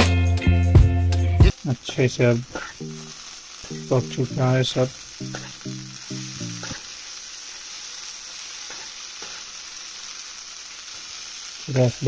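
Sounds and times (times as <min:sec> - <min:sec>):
food sizzling in a pan: 0:01.5 - 0:12.0
person speaking: 0:03.7 - 0:06.7.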